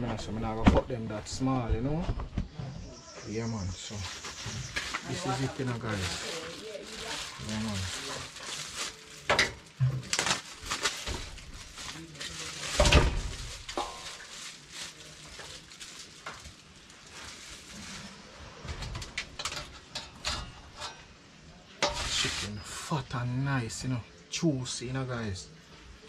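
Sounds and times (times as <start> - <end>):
rustling: 3.7 - 22.9.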